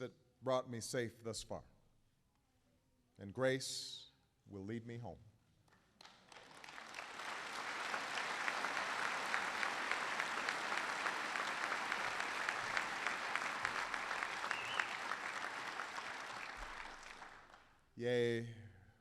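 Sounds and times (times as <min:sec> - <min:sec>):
large audience applauding: 0:06.0 - 0:17.7.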